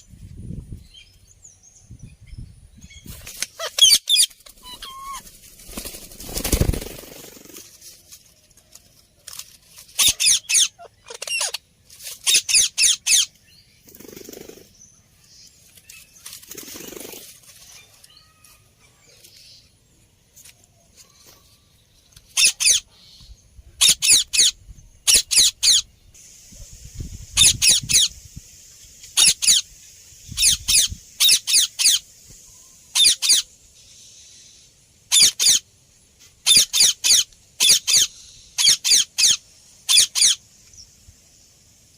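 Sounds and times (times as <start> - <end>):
parakeet high-pitched calls: 3.6 - 5.3, 10.0 - 11.6, 12.3 - 13.3, 22.4 - 22.8, 23.8 - 25.9, 29.2 - 29.6, 30.4 - 32.0, 32.9 - 33.5, 35.1 - 35.6, 36.4 - 40.4.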